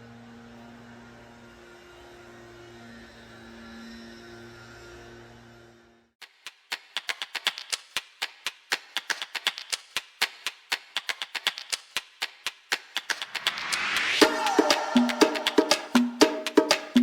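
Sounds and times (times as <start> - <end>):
rapid sharp clicks: 6.2 - 17.0
music: 14.2 - 17.0.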